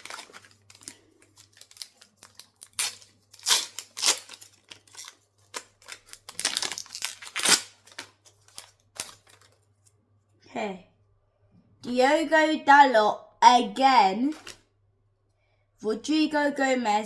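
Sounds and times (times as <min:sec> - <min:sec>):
card pack wrapper tearing: 0:00.0 - 0:09.6, 0:14.3 - 0:14.6.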